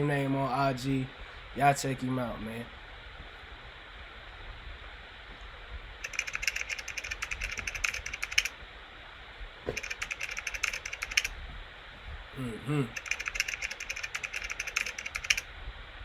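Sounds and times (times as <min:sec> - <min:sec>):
low steady hiss: 0:00.0 - 0:16.0
keyboard typing clicks: 0:06.0 - 0:08.5, 0:09.7 - 0:11.3, 0:12.9 - 0:15.4.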